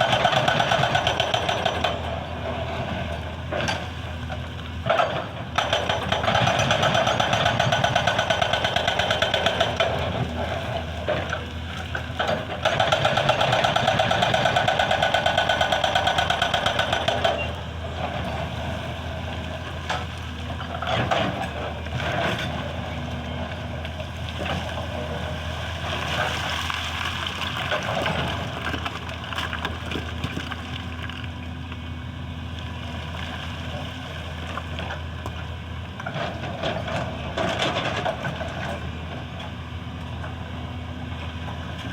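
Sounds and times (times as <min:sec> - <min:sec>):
hydraulic breaker hammering stone: 0:00.0 - 0:02.1, 0:04.9 - 0:10.3, 0:12.2 - 0:17.5
diesel machine running: 0:00.0 - 0:41.9.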